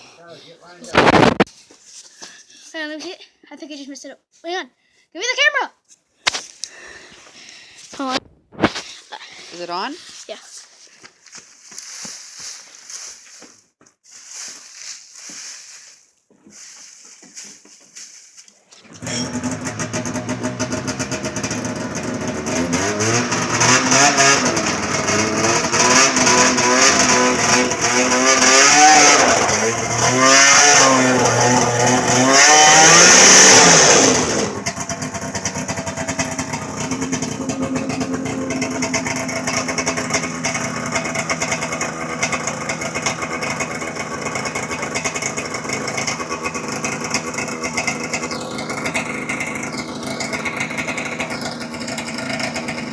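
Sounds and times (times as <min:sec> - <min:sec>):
snowmobile engine revving: 0:18.8 - 0:52.9.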